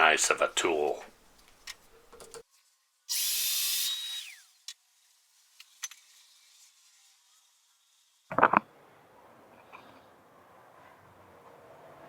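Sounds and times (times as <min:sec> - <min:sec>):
miter saw motor whining: 0:03.1 - 0:04.5.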